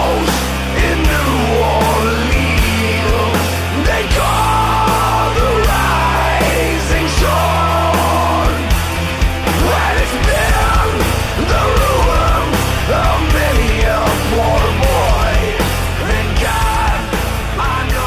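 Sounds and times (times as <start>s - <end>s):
distorted guitars: 0.0s - 18.0s
driving drumbeat: 0.0s - 18.0s
shouted vocals: 0.0s - 18.0s.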